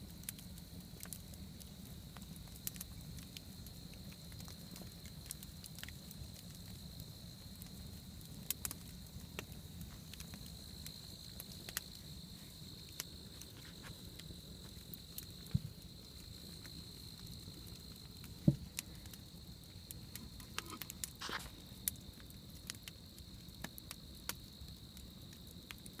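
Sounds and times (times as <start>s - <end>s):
campfire crackling: 0.0s - 26.0s
night insects trilling: 0.0s - 26.0s.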